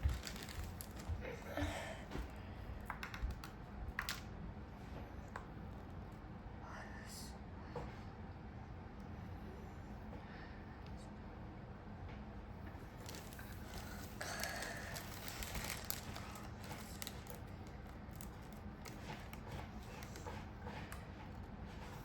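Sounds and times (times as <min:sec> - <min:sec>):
craft pieces rustling: 0:00.0 - 0:01.2, 0:13.0 - 0:20.3.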